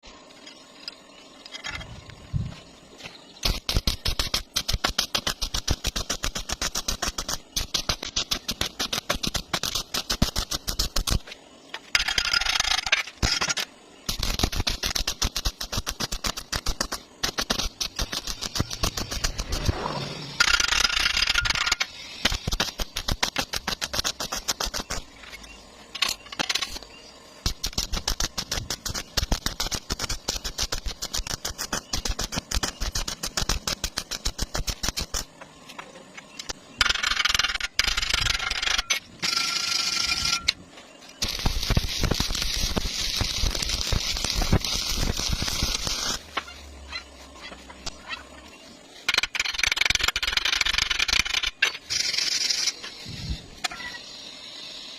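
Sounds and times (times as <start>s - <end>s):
welding arc crackling: 3.4s - 25.4s, 27.4s - 35.4s, 41.2s - 48.2s, 49.0s - 54.9s.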